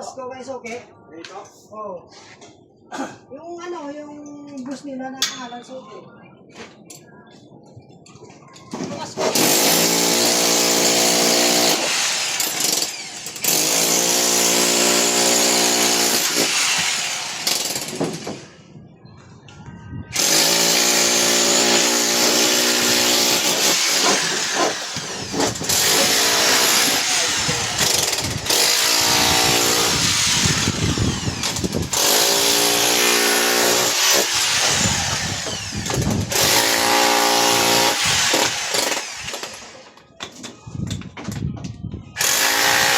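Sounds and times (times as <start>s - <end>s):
power tool motor whining: 20.2s - 39.6s.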